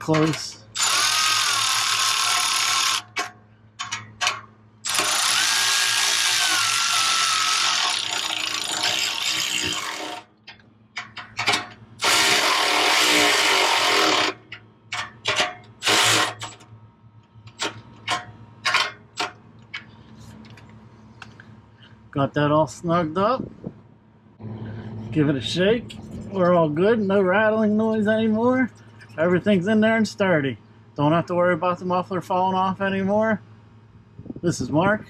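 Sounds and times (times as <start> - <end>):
cordless ratchet motor whining: 0.7 - 4.0, 4.8 - 10.3, 11.4 - 16.6.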